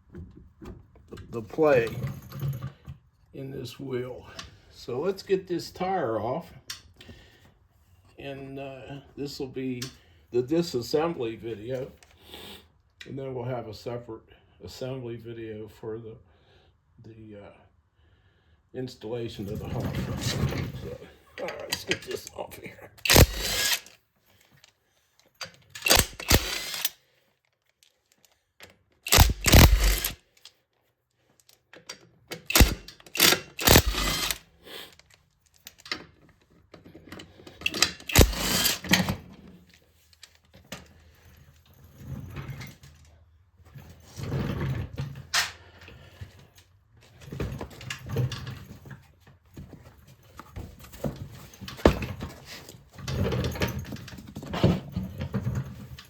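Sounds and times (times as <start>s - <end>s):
impact wrench bursts: 23.0s - 23.9s, 25.8s - 27.0s, 29.0s - 30.4s, 32.4s - 35.0s, 37.6s - 39.1s.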